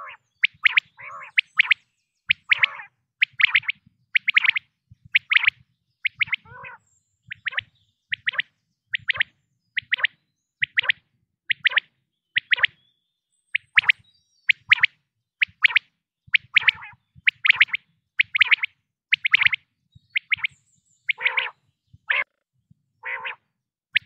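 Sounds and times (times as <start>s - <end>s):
quail calling: 0.0s - 4.6s, 5.2s - 11.8s, 16.4s - 19.6s, 20.2s - 22.4s, 23.0s - 23.4s.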